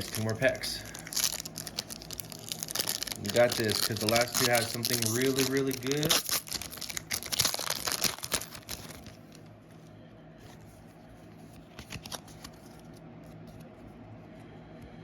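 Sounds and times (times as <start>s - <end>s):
foil wrapper crinkling and tearing: 0.0s - 9.5s, 11.7s - 12.9s
soft handling sounds: 8.3s - 15.0s.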